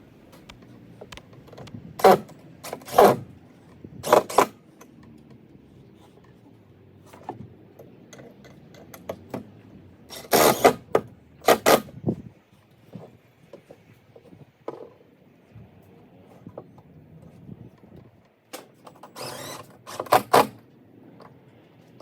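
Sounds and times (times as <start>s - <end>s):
drill driving screws into timber: 2.0s - 3.3s, 4.0s - 4.6s, 10.1s - 11.9s, 18.6s - 20.6s.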